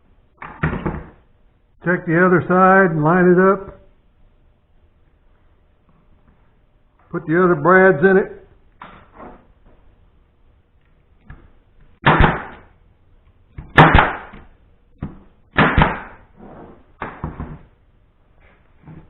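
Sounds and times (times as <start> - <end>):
nail gun shots into wood: 12.0 - 12.6, 13.7 - 14.5, 15.5 - 16.2.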